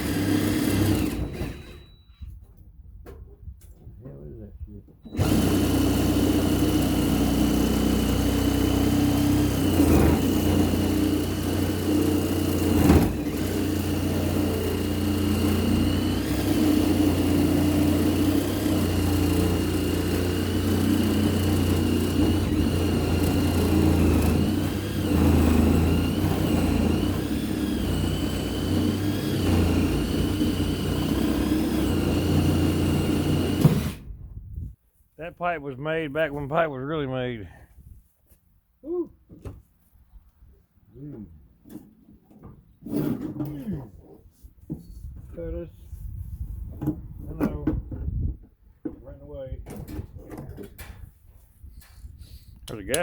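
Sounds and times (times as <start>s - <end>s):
reciprocating saw cutting metal pipe: 0.0s - 1.6s, 5.2s - 34.0s.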